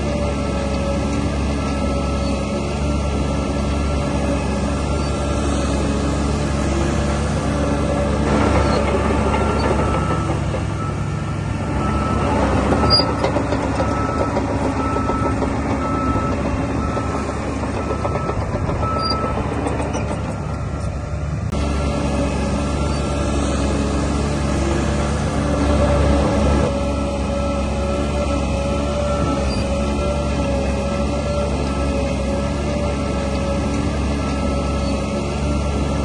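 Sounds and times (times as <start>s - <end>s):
bulldozer diesel engine running: 0.0s - 36.0s
reversing alarm beeping: 1.4s - 5.3s, 8.6s - 19.6s, 26.9s - 30.5s, 33.9s - 36.0s.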